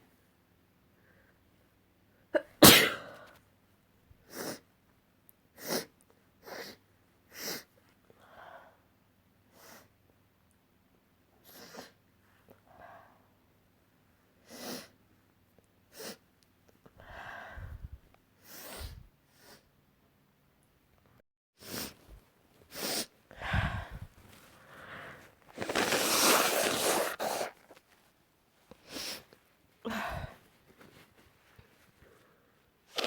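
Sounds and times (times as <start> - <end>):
person sneezing: 2.4 - 3.3.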